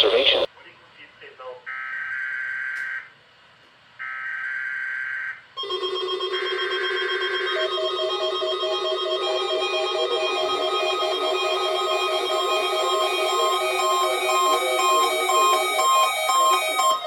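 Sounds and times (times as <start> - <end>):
steady held tones: 7.2 - 17.0
warbling digital data tones: 7.6 - 17.0.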